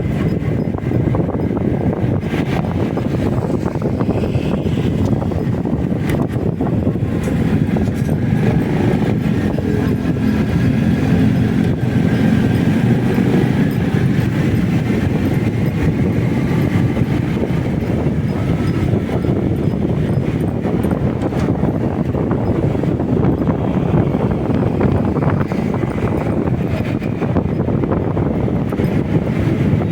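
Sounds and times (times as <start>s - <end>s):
motorcycle engine and tyres: 0.0s - 29.9s
wind rushing on microphone: 0.0s - 29.9s.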